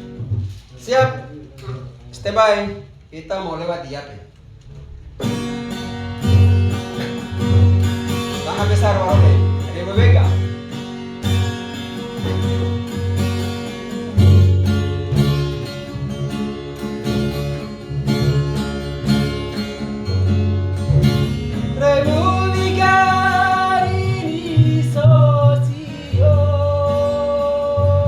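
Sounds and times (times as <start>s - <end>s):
strummed acoustic guitar: 0.0s - 1.9s, 4.4s - 28.0s
deep bass notes: 6.2s - 10.6s, 17.1s - 28.0s
person singing long notes: 21.8s - 28.0s.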